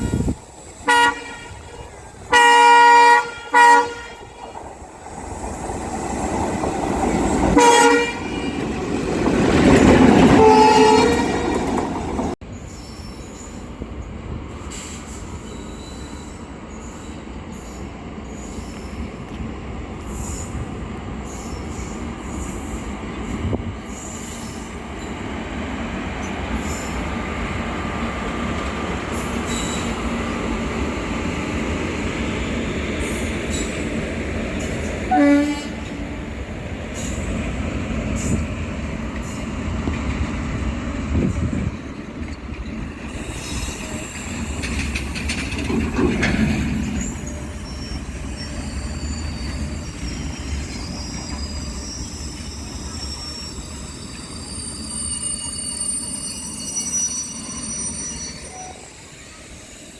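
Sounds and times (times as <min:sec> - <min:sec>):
locomotive horn blasts: 0:00.0 - 0:04.3, 0:07.6 - 0:08.6, 0:10.3 - 0:11.6, 0:35.1 - 0:36.0
train rumbling past: 0:00.0 - 0:59.9
train wagons clattering on track: 0:00.0 - 0:59.9.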